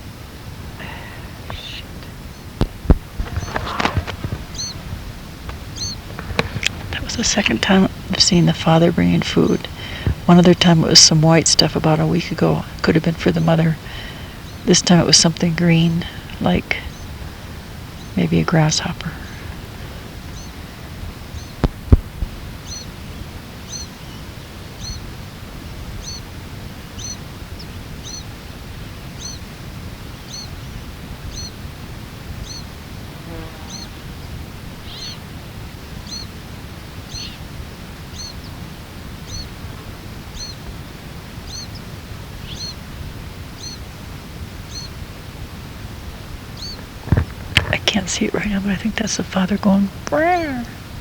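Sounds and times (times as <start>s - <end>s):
bird chick calling: 1.0s - 2.6s, 3.2s - 11.6s, 13.6s - 21.6s, 22.6s - 25.1s, 26.0s - 26.3s, 26.9s - 28.3s, 29.2s - 29.4s, 30.2s - 30.6s, 31.3s - 31.6s, 32.4s - 32.7s, 33.7s - 34.0s, 34.8s - 35.2s, 36.0s - 36.3s, 37.1s - 37.4s, 38.1s - 38.6s, 39.2s - 39.6s, 40.3s - 40.6s, 41.4s - 42.8s, 43.6s - 43.8s, 44.7s - 45.0s, 46.5s - 47.0s.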